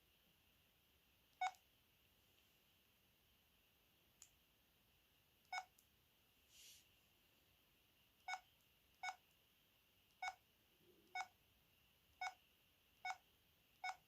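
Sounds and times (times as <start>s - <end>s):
phone keypad beeping: 1.4s - 1.6s, 8.2s - 9.2s, 10.2s - 10.4s, 11.1s - 11.4s, 12.2s - 12.4s, 13.8s - 14.0s.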